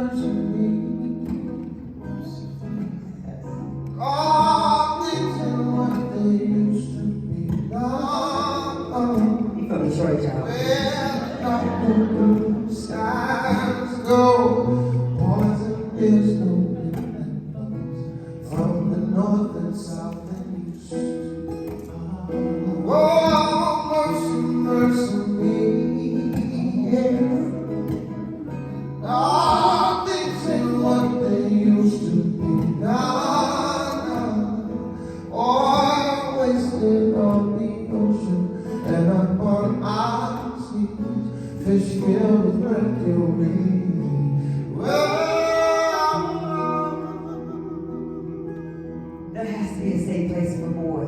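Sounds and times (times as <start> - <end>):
guitar accompaniment: 0.0 - 51.0
person singing: 10.4 - 48.8.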